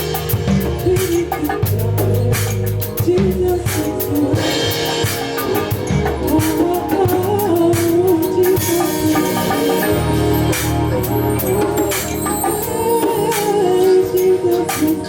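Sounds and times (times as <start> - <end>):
drum kit: 0.0 - 15.0
steady bass: 0.0 - 15.0
wavering lead melody: 0.0 - 15.0.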